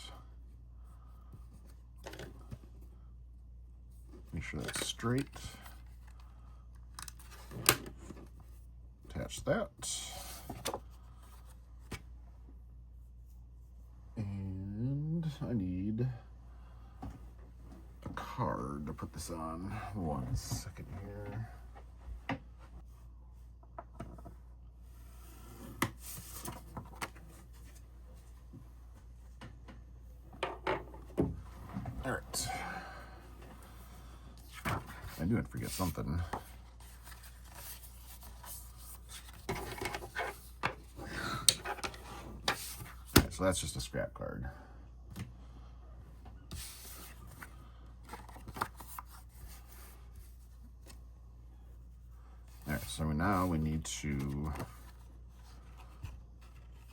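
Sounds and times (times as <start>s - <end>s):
paper rustling: 34.4s - 40.6s, 46.5s - 51.0s.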